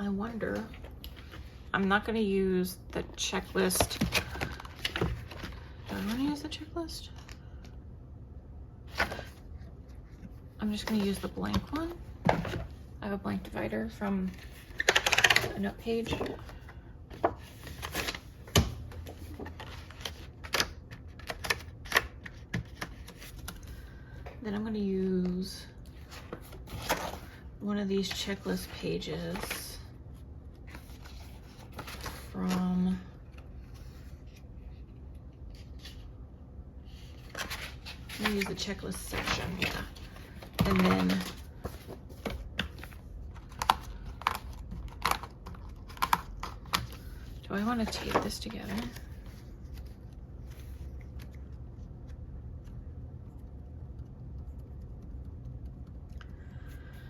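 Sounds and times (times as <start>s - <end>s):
paper rustling: 28.0s - 29.8s, 30.7s - 32.6s, 36.9s - 52.2s.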